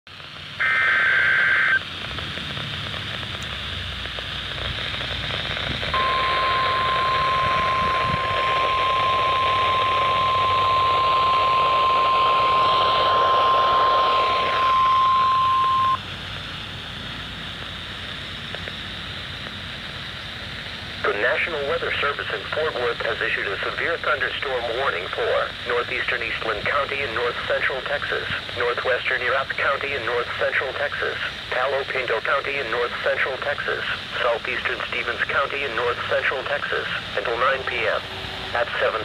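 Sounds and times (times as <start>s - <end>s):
radio hiss: 0.1s - 16.7s, 17.4s - 39.0s
warning alarm tone: 6.0s - 16.0s.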